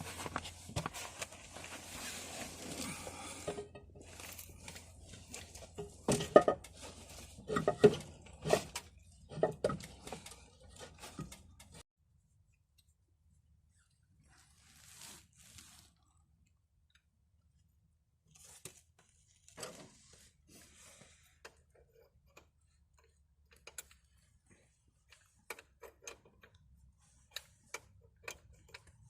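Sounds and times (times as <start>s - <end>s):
objects knocking and clattering: 5.5s - 11.8s.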